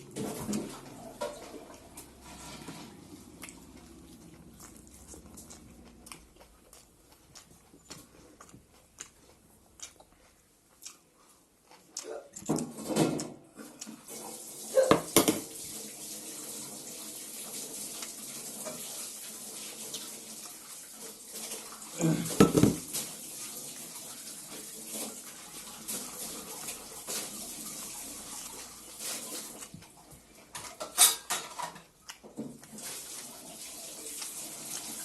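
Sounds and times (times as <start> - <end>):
tap water running: 0.0 - 4.2, 13.9 - 31.7, 32.3 - 35.0
dishes and cutlery clattering: 0.1 - 3.2, 22.2 - 23.1, 30.5 - 31.9.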